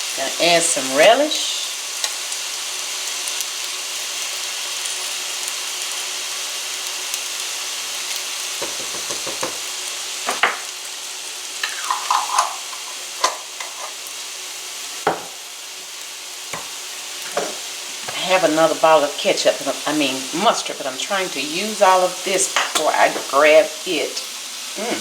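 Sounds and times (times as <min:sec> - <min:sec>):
food sizzling in a skillet: 0:00.0 - 0:25.0
utensil scraping a pan: 0:11.6 - 0:14.1.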